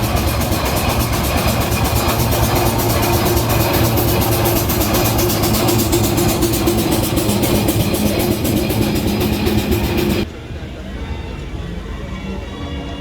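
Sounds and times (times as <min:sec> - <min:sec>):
steam engine running: 0:00.0 - 0:10.3
steady hum: 0:00.0 - 0:13.0.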